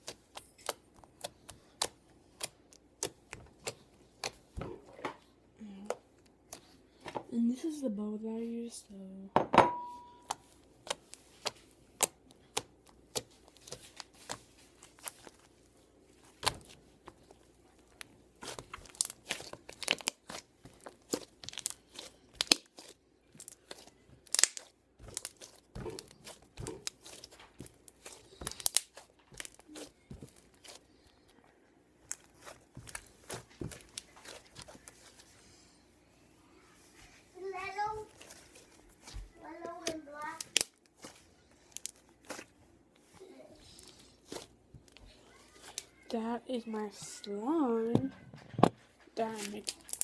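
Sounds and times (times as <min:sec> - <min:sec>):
slime squishing and popping: 0:16.2 - 0:31.4, 0:32.0 - 0:35.1, 0:39.8 - 0:42.6.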